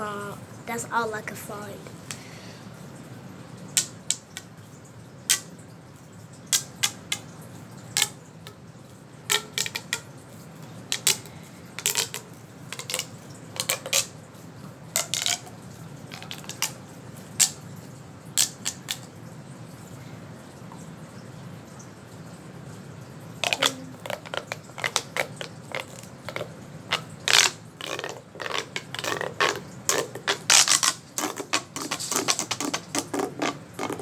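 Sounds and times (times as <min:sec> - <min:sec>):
plastic fidget toy clicking: 0:06.5 - 0:07.3, 0:08.0 - 0:08.6, 0:09.3 - 0:10.0, 0:10.9 - 0:14.1, 0:15.0 - 0:15.5, 0:16.1 - 0:16.8, 0:18.4 - 0:19.1, 0:23.4 - 0:34.0.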